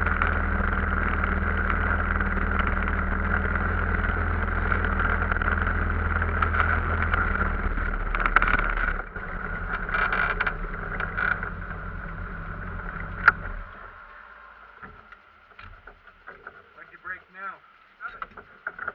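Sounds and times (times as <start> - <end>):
engine idling: 0.0 - 18.9.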